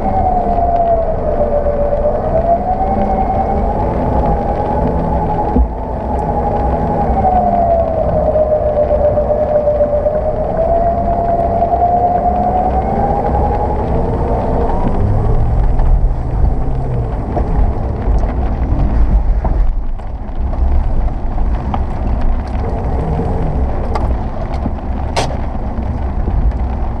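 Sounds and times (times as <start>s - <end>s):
car engine low rumble: 0.0s - 27.0s
sharp knocks: 25.2s - 25.5s.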